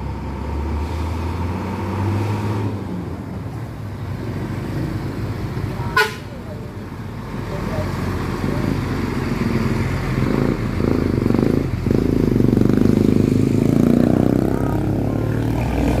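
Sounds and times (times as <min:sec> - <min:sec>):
bus engine rumbling: 0:00.0 - 0:16.0.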